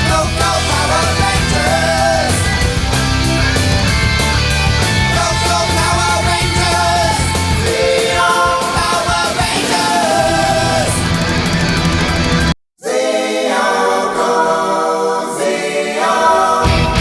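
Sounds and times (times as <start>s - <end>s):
song with sung vocals: 0.0s - 11.8s, 12.8s - 17.0s
bass and drums: 0.0s - 12.6s, 16.6s - 17.0s.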